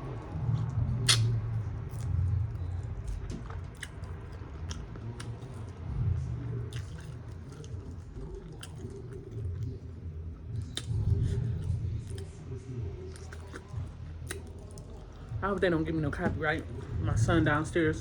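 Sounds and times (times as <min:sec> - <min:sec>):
person chewing food: 0:00.0 - 0:15.4
wet lip smacks and mouth clicks: 0:01.0 - 0:05.8, 0:06.6 - 0:09.8, 0:10.6 - 0:12.4, 0:13.0 - 0:15.4.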